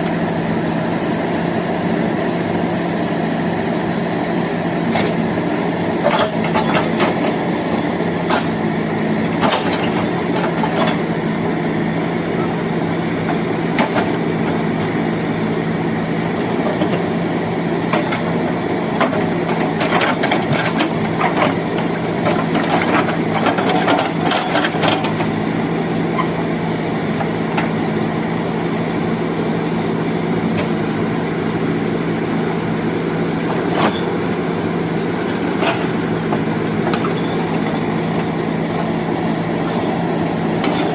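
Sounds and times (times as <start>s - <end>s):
diesel engine running: 0.0s - 40.9s
sharp metal knocks and clanks: 9.4s - 11.1s.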